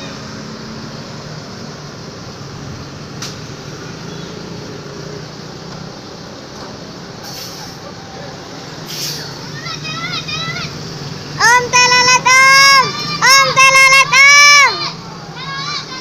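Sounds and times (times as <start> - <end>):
bus engine running: 0.0 - 16.0
road traffic: 0.0 - 16.0
air hiss: 7.2 - 7.8, 8.8 - 9.4.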